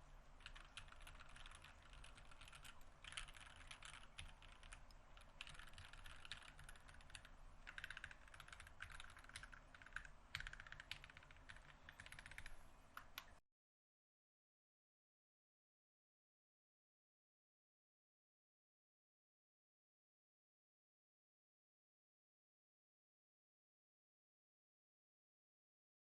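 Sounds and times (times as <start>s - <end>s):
fast mechanical keyboard typing: 0.4s - 13.3s.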